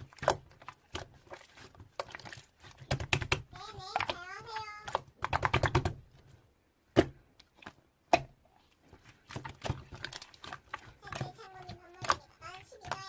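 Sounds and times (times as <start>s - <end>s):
sharp taps and clicks: 2.9s - 6.0s.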